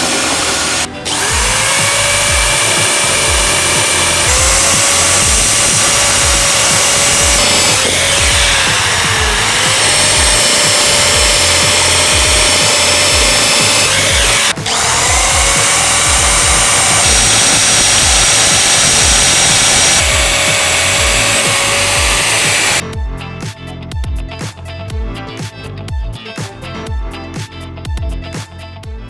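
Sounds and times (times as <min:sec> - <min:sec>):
electric drill whining: 0:00.0 - 0:22.8
background music with steady beat: 0:00.0 - 0:29.0.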